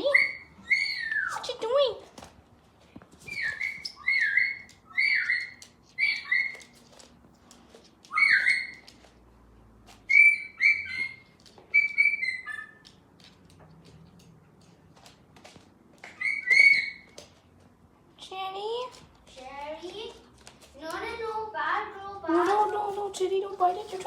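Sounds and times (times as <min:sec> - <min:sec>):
parrot squawking: 0:00.0 - 0:01.5, 0:03.3 - 0:06.5, 0:08.1 - 0:08.8, 0:10.1 - 0:12.8, 0:16.1 - 0:17.0.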